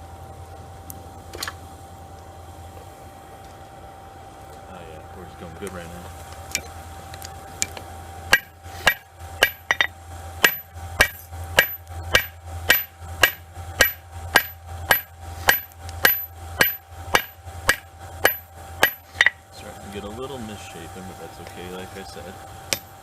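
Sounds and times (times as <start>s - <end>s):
steady low hum: 0.0s - 23.0s
hammer striking metal on anvil: 8.3s - 19.4s, 22.7s - 23.0s.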